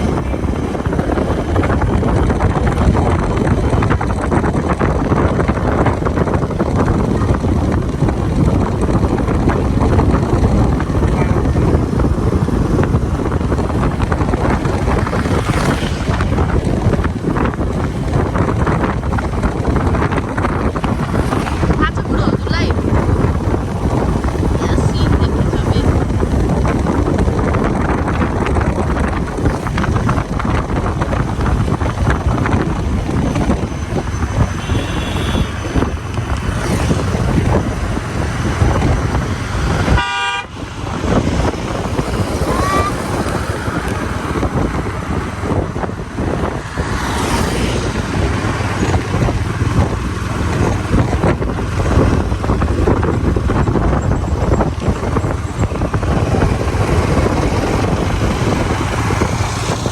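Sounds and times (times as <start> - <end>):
vehicle driving road noise: 0.0 - 59.9
vehicle horn honking: 34.5 - 35.9, 39.9 - 40.6.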